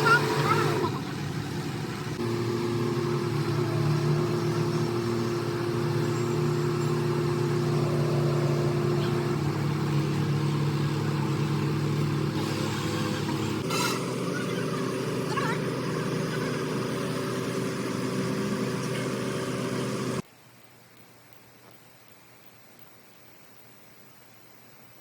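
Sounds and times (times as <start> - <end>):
machine humming: 2.0 - 20.2.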